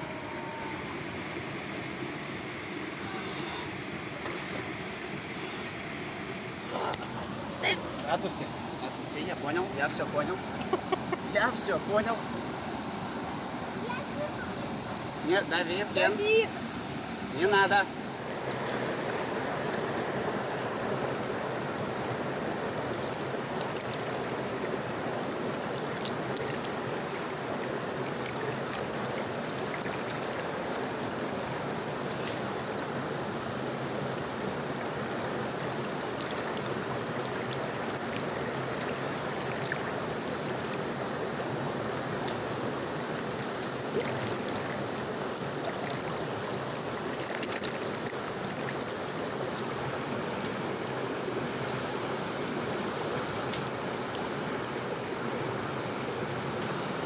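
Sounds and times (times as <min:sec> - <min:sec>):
water rushing: 0:00.0 - 0:57.0.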